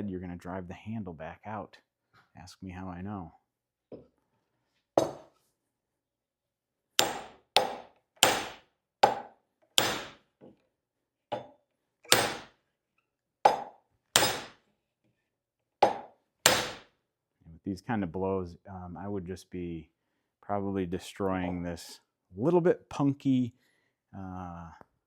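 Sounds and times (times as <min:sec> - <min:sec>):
hammer striking metal: 0:07.0 - 0:10.2, 0:12.1 - 0:12.5, 0:13.5 - 0:14.6, 0:15.8 - 0:16.8.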